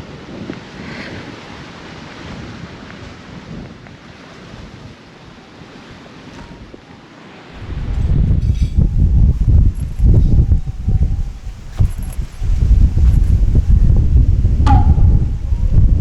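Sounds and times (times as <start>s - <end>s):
gusty wind buffeting microphone: 7.6s - 16.0s.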